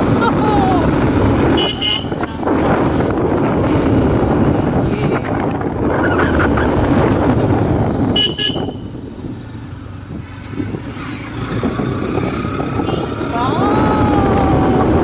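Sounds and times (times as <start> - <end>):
wind buffeting microphone: 0.0 - 15.0
vehicle horn toots: 1.5 - 2.2, 8.1 - 9.0.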